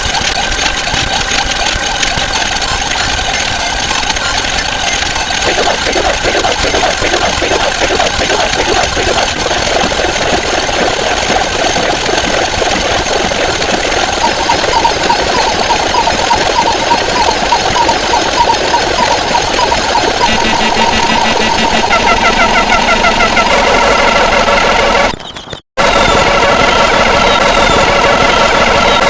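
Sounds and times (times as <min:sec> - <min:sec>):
rapid mechanical rattling: 0:00.0 - 0:29.0
quick repeating high tone: 0:00.2 - 0:25.2.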